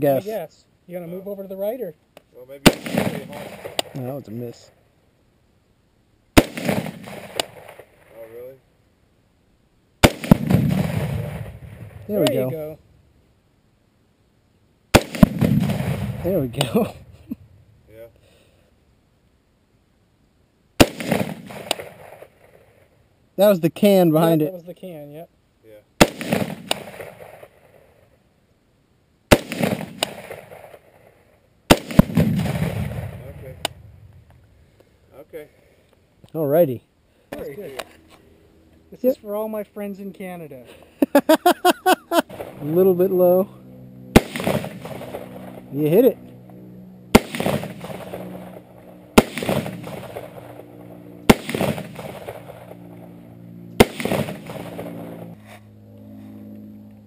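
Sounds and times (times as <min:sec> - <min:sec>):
echo of gunshot: 0:02.6 - 0:04.0, 0:06.4 - 0:08.2, 0:10.0 - 0:12.7, 0:14.9 - 0:17.3, 0:20.8 - 0:22.6, 0:26.0 - 0:27.6, 0:29.3 - 0:30.9, 0:31.7 - 0:34.1, 0:44.1 - 0:45.7, 0:47.1 - 0:50.6, 0:51.2 - 0:52.7, 0:53.8 - 0:55.2
rifle shot: 0:02.6 - 0:04.0, 0:06.4 - 0:08.2, 0:10.0 - 0:12.6, 0:14.9 - 0:17.3, 0:20.8 - 0:22.6, 0:26.0 - 0:27.9, 0:29.3 - 0:34.2, 0:44.1 - 0:45.7, 0:47.1 - 0:50.6, 0:51.2 - 0:53.0, 0:53.8 - 0:55.4.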